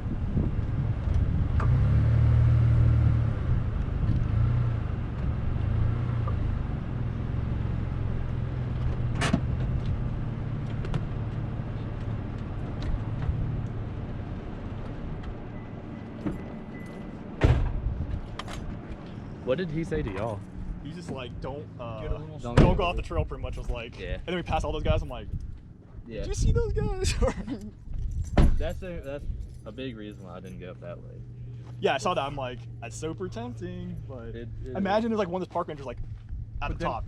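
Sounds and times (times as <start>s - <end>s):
vehicle engine idling: 28.7s - 36.9s.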